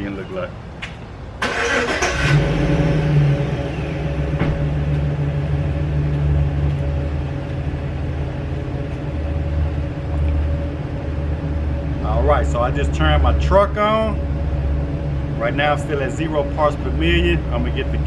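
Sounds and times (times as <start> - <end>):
truck engine revving and idling: 0.1 - 18.0
engine starter cranking: 1.4 - 3.2.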